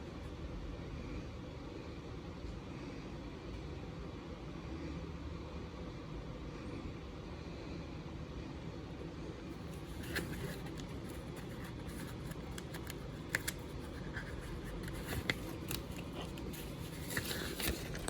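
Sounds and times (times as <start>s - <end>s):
low room hum: 0.0s - 18.0s
paper rustling: 9.6s - 18.0s.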